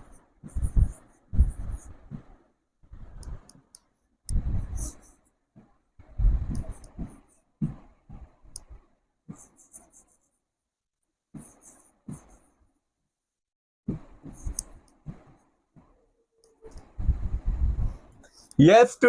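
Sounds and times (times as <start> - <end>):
writing on a board: 0.0 - 2.4, 4.4 - 10.4, 11.4 - 12.6, 13.9 - 16.9.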